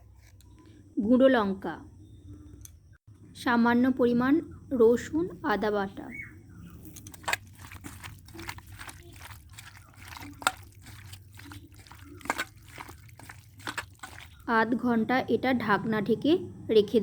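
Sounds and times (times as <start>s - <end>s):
wet squelching: 6.7s - 14.6s.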